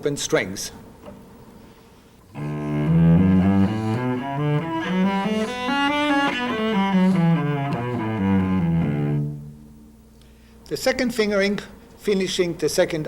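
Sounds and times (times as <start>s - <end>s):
cello playing a scale: 2.3s - 9.6s.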